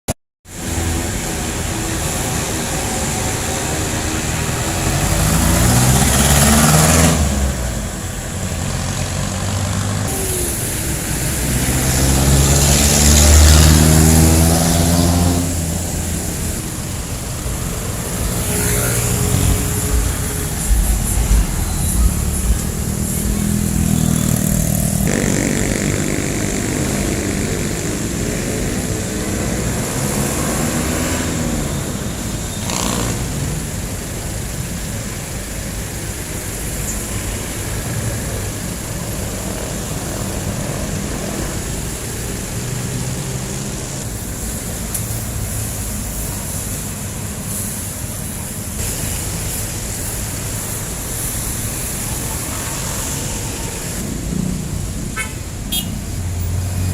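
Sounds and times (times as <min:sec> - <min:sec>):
diesel engines running: 0:00.5 - 0:56.9
motorcycles: 0:00.5 - 0:56.9
engine revving: 0:00.6 - 0:33.9.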